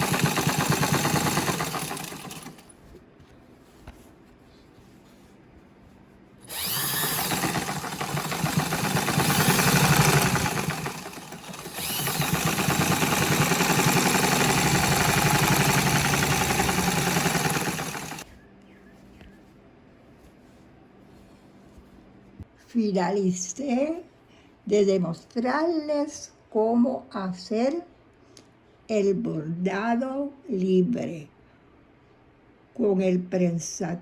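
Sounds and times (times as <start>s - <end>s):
sewing machine stitching: 0.0s - 2.8s, 6.4s - 18.3s.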